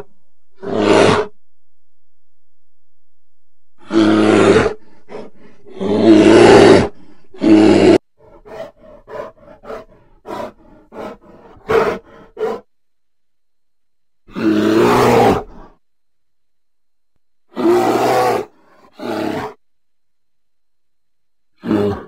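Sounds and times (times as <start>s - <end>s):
bear roaring: 0.6s - 1.3s, 3.8s - 12.7s, 14.3s - 15.8s, 17.5s - 19.6s, 21.6s - 22.0s
bear grunting: 3.8s - 12.7s, 14.3s - 15.8s, 17.5s - 19.6s, 21.6s - 22.0s.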